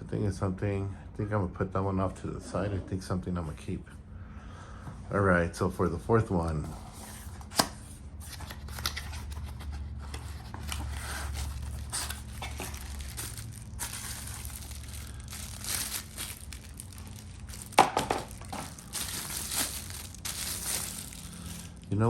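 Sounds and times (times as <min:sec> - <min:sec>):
packaging crinkling and tearing: 0:08.4 - 0:22.0.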